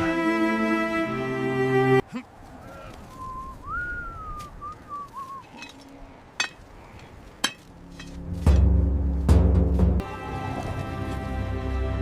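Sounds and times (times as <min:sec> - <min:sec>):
person whistling a tune: 0:03.2 - 0:05.5.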